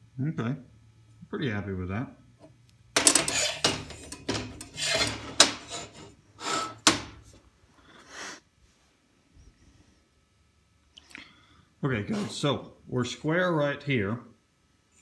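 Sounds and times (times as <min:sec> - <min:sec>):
sharp metal knocks: 0:03.0 - 0:06.0, 0:06.8 - 0:07.2
steel scraping on metal table: 0:03.0 - 0:07.3.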